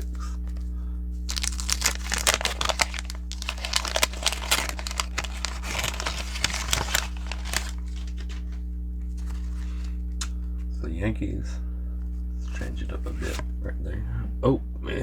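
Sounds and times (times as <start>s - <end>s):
steady low hum: 0.0s - 15.0s
wax paper wrapper tearing and crinkling: 1.3s - 8.6s.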